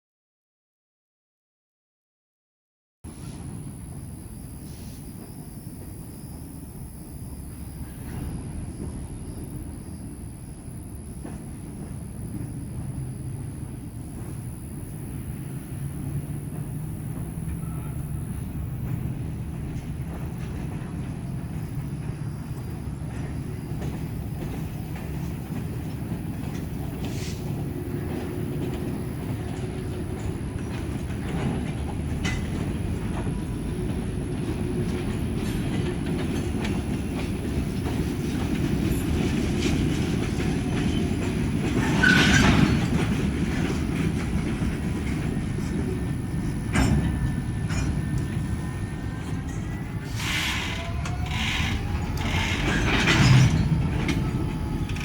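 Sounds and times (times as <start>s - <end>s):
freight train rumbling by: 3.1s - 55.0s
wheels clicking over rail joints: 10.6s - 55.0s
metallic wheel squeals: 41.8s - 43.0s, 46.4s - 55.0s.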